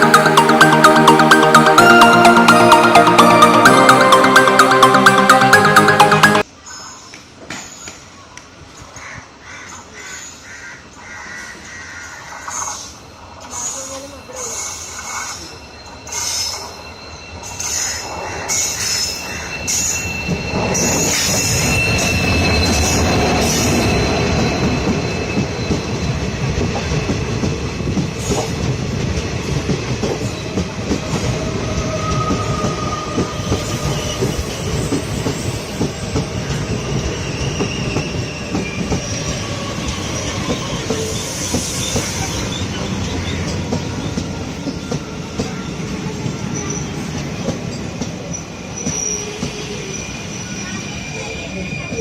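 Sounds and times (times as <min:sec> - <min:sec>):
train wheels rumbling on track: 0:11.6 - 0:52.0
high wheel squeals: 0:13.5 - 0:27.3, 0:31.1 - 0:47.2.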